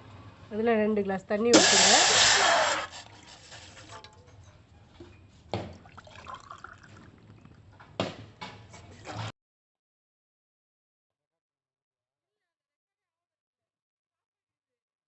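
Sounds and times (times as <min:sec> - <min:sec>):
water pouring into vessel: 0:01.6 - 0:04.2, 0:05.7 - 0:07.6.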